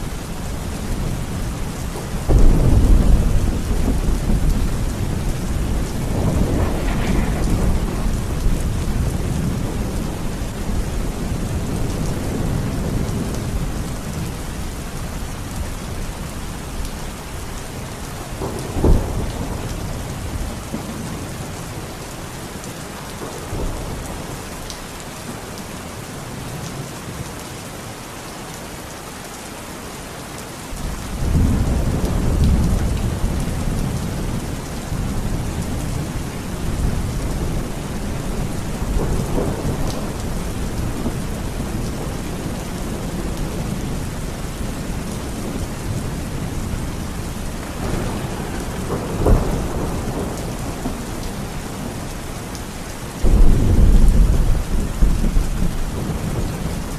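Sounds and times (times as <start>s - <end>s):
heavy rain: 0.0s - 56.9s
rolling thunder: 1.0s - 14.3s, 18.2s - 21.4s, 30.8s - 52.2s, 53.2s - 56.9s
sharp thunderclap: 2.3s - 10.2s, 53.2s - 56.6s.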